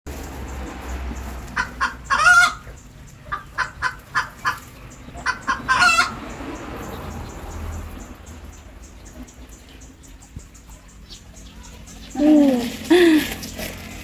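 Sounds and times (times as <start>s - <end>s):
chicken clucking: 0.6s - 13.4s
chicken squawk: 1.4s - 6.3s.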